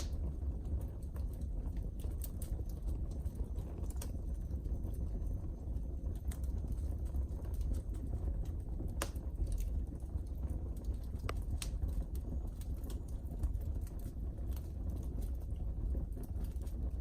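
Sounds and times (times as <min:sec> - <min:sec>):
fire pops: 0:00.0 - 0:17.0
low steady rumble: 0:00.0 - 0:17.0
wood fire crackling: 0:00.0 - 0:17.0.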